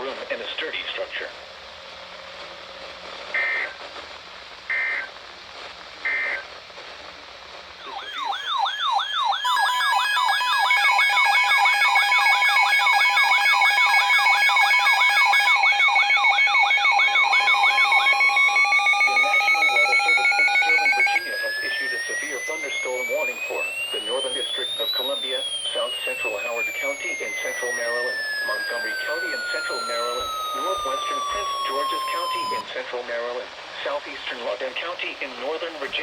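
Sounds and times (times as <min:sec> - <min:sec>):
electronic sirens yelping: 0:07.8 - 0:32.6
short digital data bursts: 0:07.8 - 0:32.6
steady alarm tones: 0:07.8 - 0:32.6
tone rising in pitch: 0:07.8 - 0:32.6.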